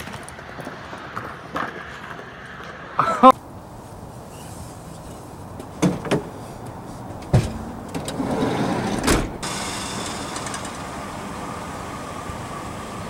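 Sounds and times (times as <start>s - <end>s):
bike rolling and clattering: 0.0s - 2.8s
steady hiss: 3.3s - 7.9s, 9.1s - 13.0s
bike knocks and landing thump: 7.3s - 7.8s.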